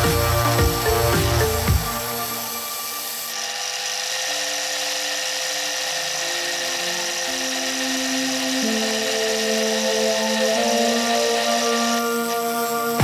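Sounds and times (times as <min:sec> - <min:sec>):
background music with low notes: 0:00.0 - 0:03.0, 0:06.4 - 0:13.0
power tool motor whining: 0:00.0 - 0:13.0.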